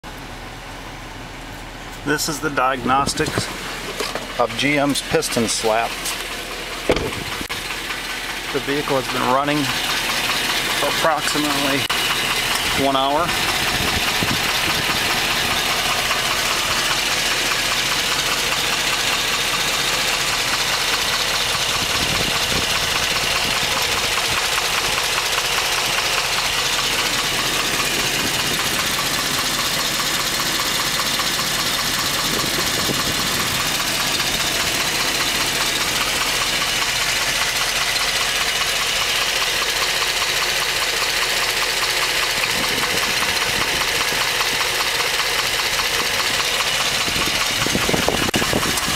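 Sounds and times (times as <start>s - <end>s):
engine running with rapid knock: 2.4s - 48.9s.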